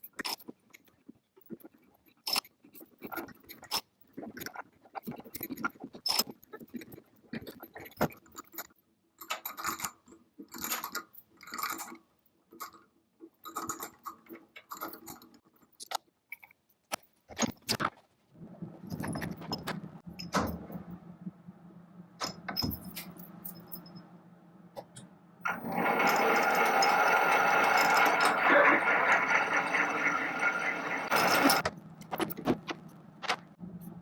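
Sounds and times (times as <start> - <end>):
steady low hum: 18.4 - 34.0
metal parts and tools clinking: 22.2 - 24.1, 24.8 - 33.0.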